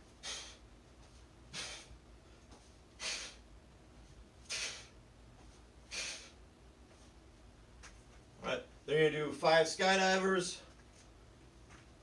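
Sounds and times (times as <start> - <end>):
sharp forceful exhales: 0.2 - 0.6, 1.5 - 2.0, 3.0 - 3.4, 4.5 - 5.0, 5.9 - 6.4.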